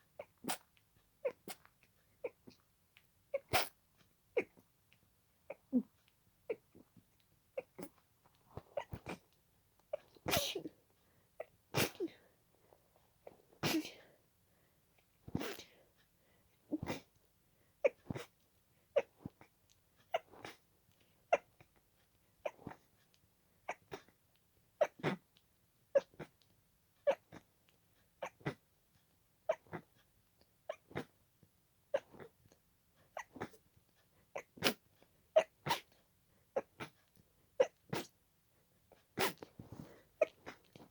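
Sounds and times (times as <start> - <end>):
person sneezing: 10.3 - 10.7, 11.8 - 12.2, 13.6 - 14.1.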